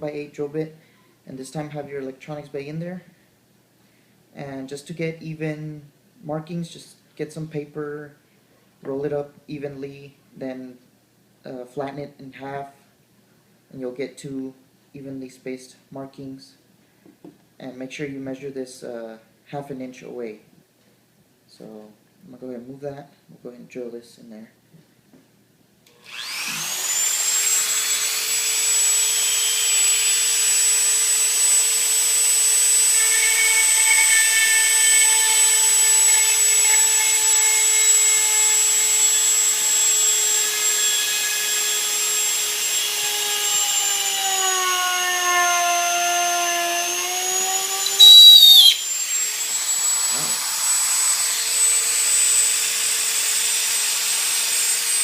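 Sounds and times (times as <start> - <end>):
electric drill whining: 25.9 - 55.0
short very loud burst: 47.8 - 48.9.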